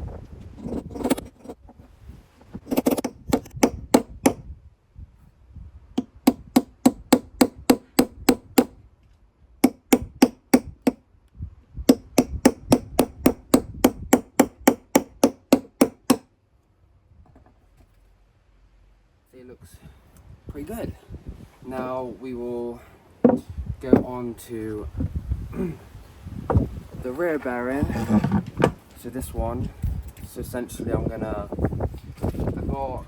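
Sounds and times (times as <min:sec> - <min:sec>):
hammer knocking on metal: 0:23.2 - 0:24.1.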